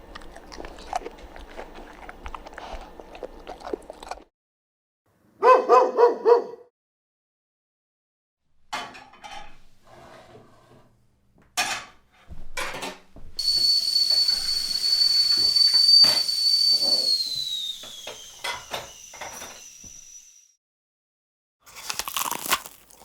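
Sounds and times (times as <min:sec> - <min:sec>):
pots and dishes clattering: 0:08.8 - 0:09.6, 0:11.6 - 0:12.0, 0:12.6 - 0:13.1
steam hissing: 0:13.4 - 0:20.3
kettle whistling: 0:13.4 - 0:20.6.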